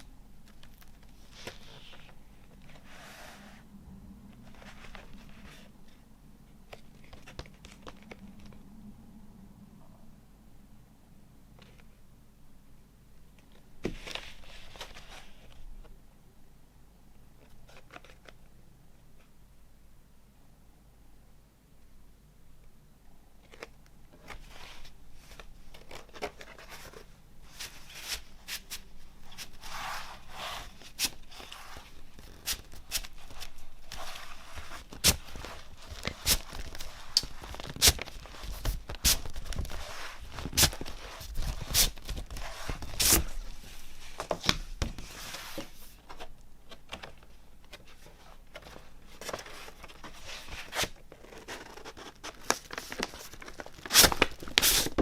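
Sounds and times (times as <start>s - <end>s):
cardboard and paper sleeves rustling: 4.4s - 6.0s, 24.2s - 55.0s.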